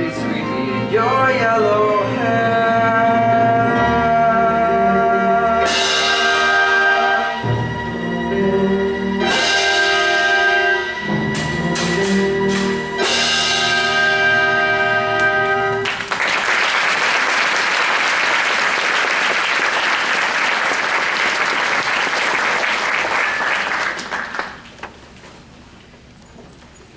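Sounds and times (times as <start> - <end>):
audience applauding: 15.7 - 25.0.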